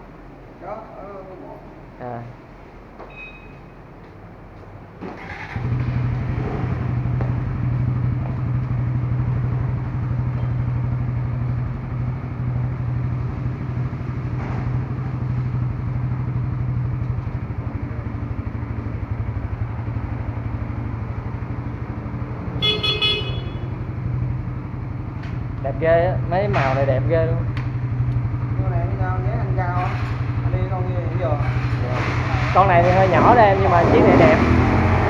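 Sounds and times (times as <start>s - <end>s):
motorcycle engine idling: 5.8s - 33.8s
horn toot: 22.6s - 23.8s.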